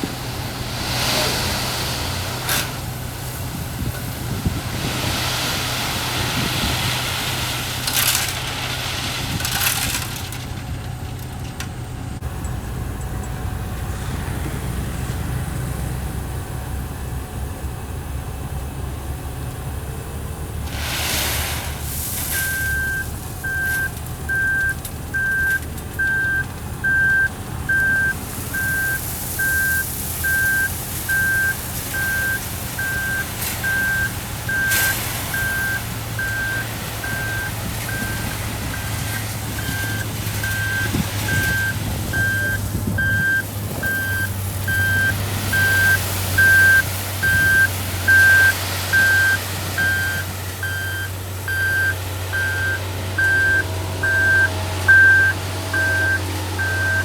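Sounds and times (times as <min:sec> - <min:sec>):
low engine running: 0:00.0 - 0:57.0
reversing alarm beeping: 0:22.2 - 0:57.0.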